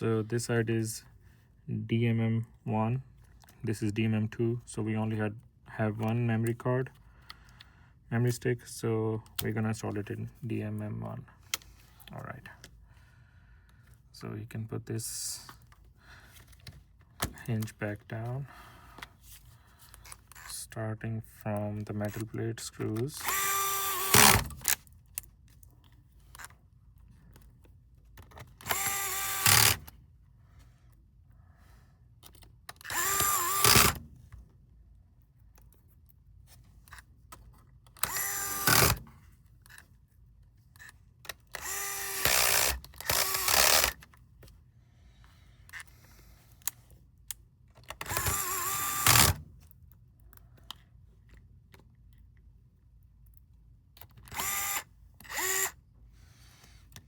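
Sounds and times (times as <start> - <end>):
electric screwdriver whirring: 23.2 - 24.8, 28.6 - 29.9, 32.8 - 34.0, 38.0 - 39.0, 41.5 - 44.0, 48.0 - 49.4, 54.3 - 55.8.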